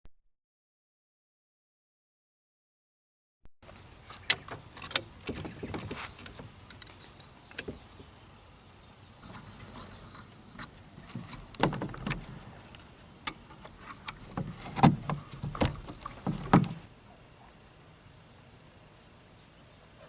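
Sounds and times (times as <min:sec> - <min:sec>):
faint steady background noise: 0:03.6 - 0:20.0
knocks and clunks: 0:09.2 - 0:12.6, 0:13.2 - 0:16.9.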